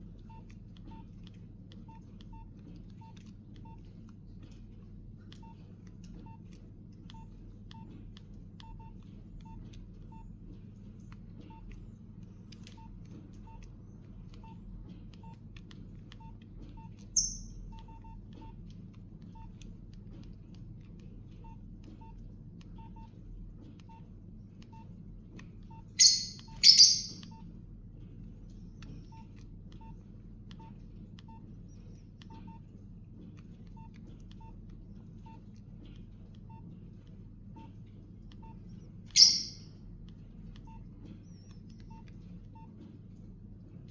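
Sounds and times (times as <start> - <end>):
steady low hum: 0.0 - 43.9
keypad beeps: 0.2 - 4.0, 5.4 - 7.9, 8.6 - 10.3, 11.4 - 11.8, 12.7 - 19.7, 21.4 - 23.2, 23.8 - 25.0, 25.7 - 27.5, 28.9 - 32.7, 33.6 - 35.5, 36.4 - 36.7, 38.4 - 39.7, 40.6 - 42.8
high-pitched chirps: 17.2 - 17.6, 26.0 - 27.2, 39.2 - 39.7.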